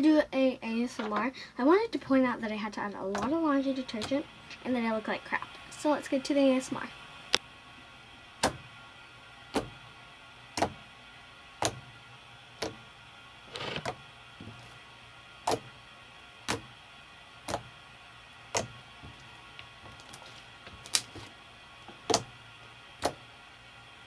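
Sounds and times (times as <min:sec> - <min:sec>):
slime squishy rustle: 0:19.0 - 0:22.2.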